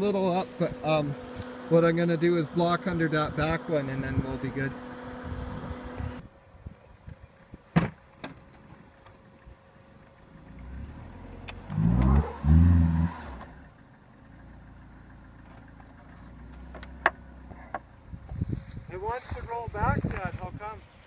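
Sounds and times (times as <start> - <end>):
car engine revving and idling: 0.0 - 6.2, 8.5 - 18.4.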